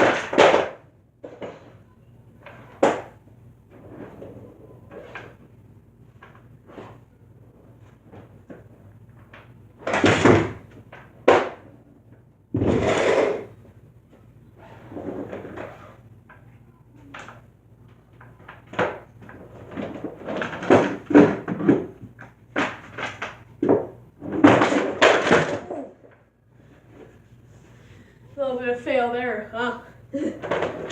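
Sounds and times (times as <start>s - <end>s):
skateboard knocking and clattering: 0.0s - 1.7s, 2.4s - 5.4s, 8.0s - 11.7s, 18.1s - 26.0s, 30.4s - 30.9s
skateboard wheels rolling: 2.4s - 5.4s.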